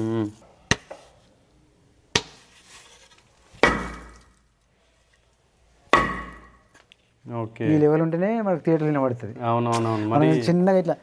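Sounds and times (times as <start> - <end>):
bat striking ball impacts: 0.7 - 1.0, 2.1 - 2.5, 3.5 - 4.4, 5.9 - 6.7.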